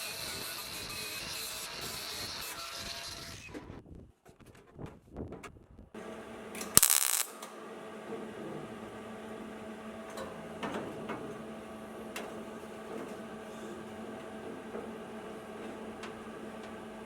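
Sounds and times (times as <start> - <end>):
steady mechanical hum: 5.9 - 17.0
sharp click: 6.8 - 7.3.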